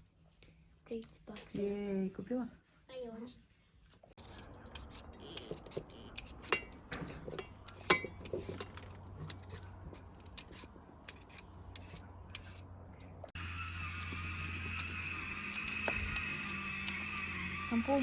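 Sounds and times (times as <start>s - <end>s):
hard objects rubbing: 4.2s - 18.0s.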